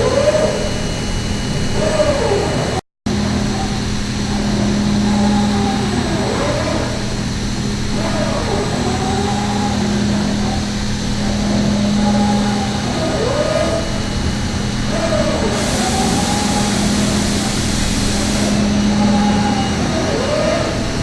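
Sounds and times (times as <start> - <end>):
machining centre hum: 0.0 - 21.0
machine whine gliding in pitch: 7.8 - 21.0
hiss: 15.3 - 18.8.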